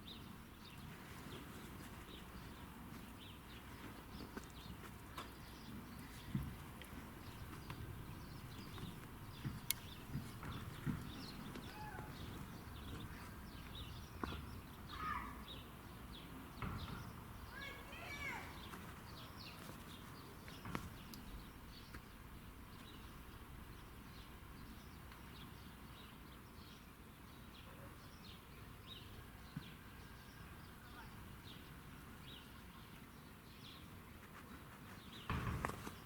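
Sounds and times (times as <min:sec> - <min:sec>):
small birds chirping: 0:00.0 - 0:36.0
low outdoor rumble: 0:01.8 - 0:16.2.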